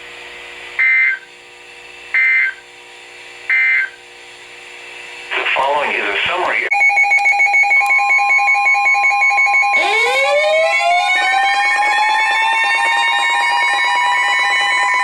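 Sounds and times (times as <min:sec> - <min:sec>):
pulsing two-tone beep: 0:02.2 - 0:02.6, 0:03.5 - 0:04.0
steady high tone: 0:06.7 - 0:15.0
warning siren winding up: 0:06.7 - 0:15.0.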